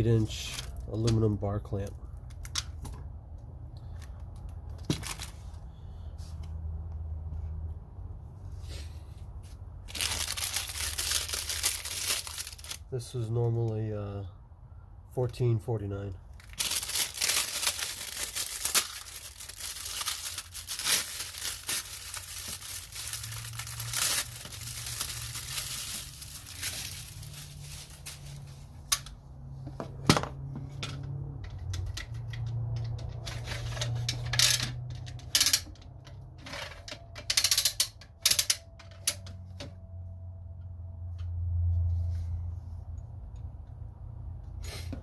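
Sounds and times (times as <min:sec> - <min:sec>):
packaging rustling and crinkling: 0:04.8 - 0:05.6, 0:09.9 - 0:12.8, 0:16.4 - 0:28.8.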